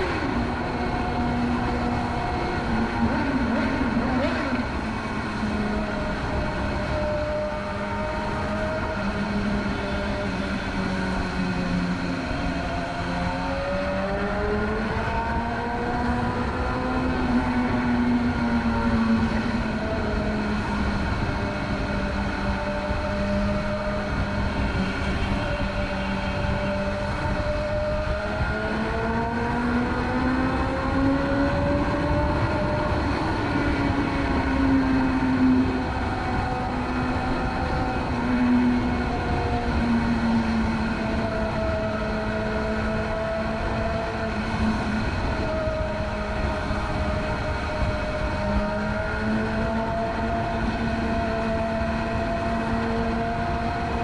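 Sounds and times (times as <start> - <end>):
motorcycle engine cruising: 0.0 - 54.0.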